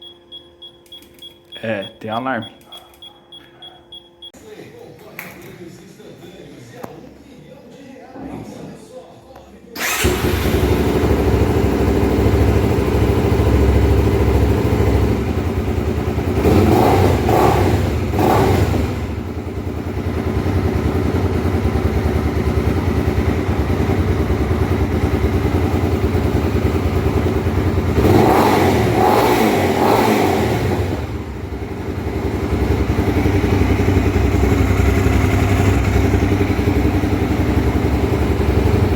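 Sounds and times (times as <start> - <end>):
motorcycle engine idling and revving: 9.8 - 38.9.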